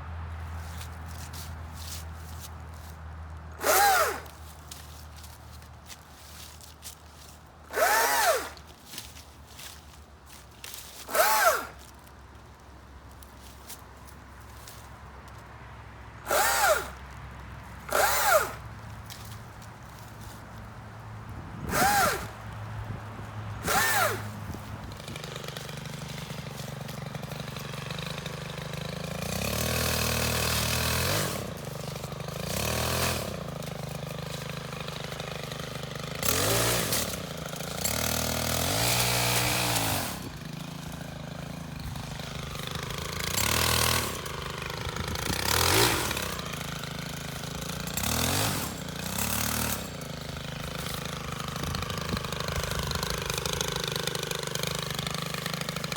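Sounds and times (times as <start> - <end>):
power saw motor revving: 3.5 - 4.9, 7.7 - 8.7, 10.8 - 12.0, 16.2 - 17.1, 17.8 - 18.7, 21.6 - 22.6, 23.5 - 55.9
power saw running steadily: 3.6 - 5.0, 7.2 - 9.2, 10.7 - 11.9, 16.2 - 17.1, 17.8 - 20.4, 21.2 - 55.9.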